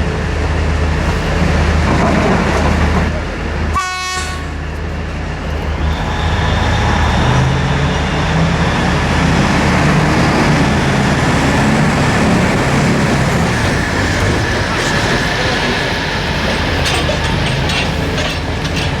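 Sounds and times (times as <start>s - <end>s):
diesel engine running under load: 4.6s - 19.0s.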